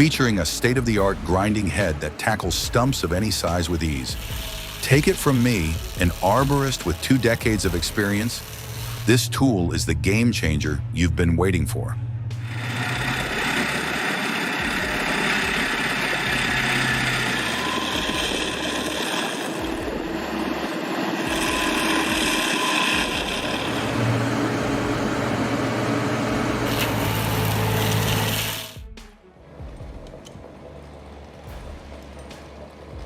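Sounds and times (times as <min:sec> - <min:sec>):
stump grinder running: 0:02.8 - 0:09.1, 0:12.4 - 0:28.8.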